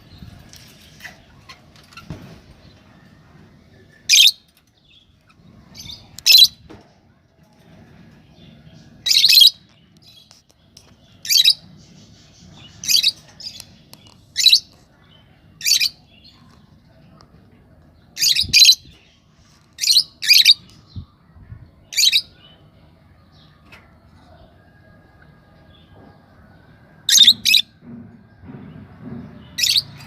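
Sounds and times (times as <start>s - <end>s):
canaries chirping: 19.8s - 20.8s, 27.1s - 27.6s.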